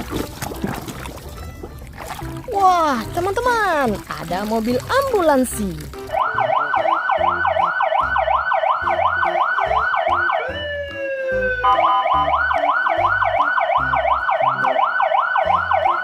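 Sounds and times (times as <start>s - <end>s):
low rhythmic thumping: 0.0s - 11.0s
ambulance siren yelping: 6.1s - 16.0s.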